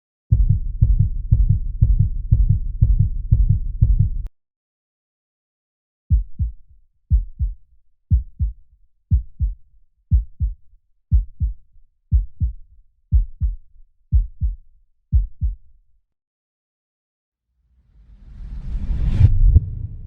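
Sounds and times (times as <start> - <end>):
heartbeat thumps: 0.3 - 4.3, 6.1 - 15.6.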